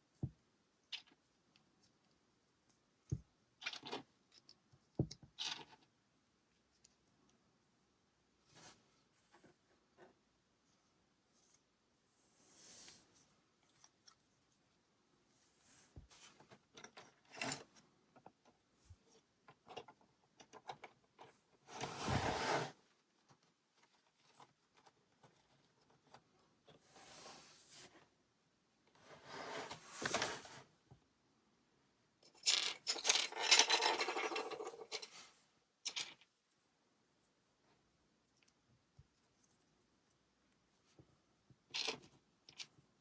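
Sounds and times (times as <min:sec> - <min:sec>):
rummaging through plastic bricks: 0:32.5 - 0:35.2.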